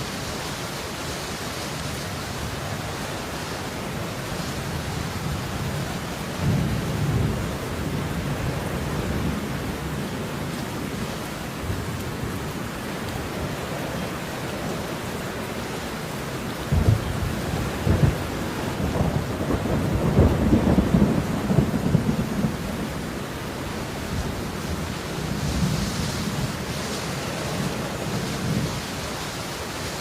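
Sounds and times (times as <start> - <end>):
falling rain: 0.0 - 30.0
thunder rumble: 16.6 - 23.1.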